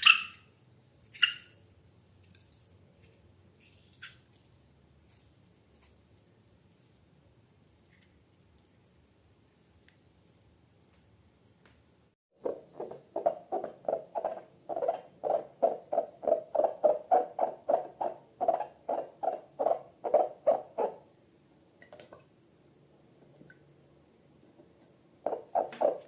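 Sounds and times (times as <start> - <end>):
slime squelching by hand: 0.0 - 11.2.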